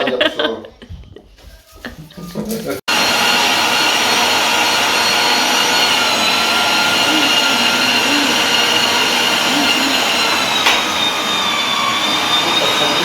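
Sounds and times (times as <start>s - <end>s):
electric blender whining: 2.9s - 13.0s.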